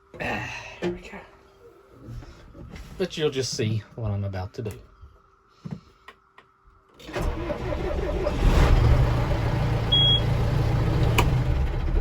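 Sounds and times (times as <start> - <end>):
tractor diesel engine running: 7.1 - 12.0
short high beep: 9.9 - 10.3.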